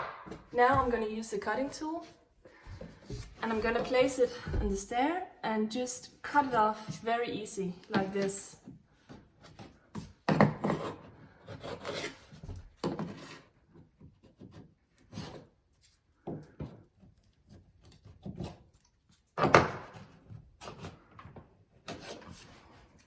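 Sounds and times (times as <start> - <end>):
chisel scraping wood: 10.5 - 13.5.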